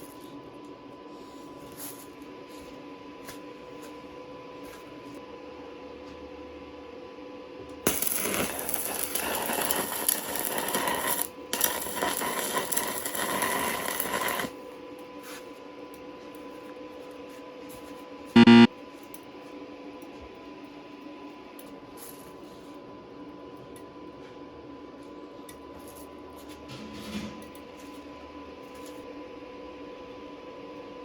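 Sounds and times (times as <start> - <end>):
welding arc crackling and hissing: 7.8 - 14.6
short loud tone: 18.4 - 18.7.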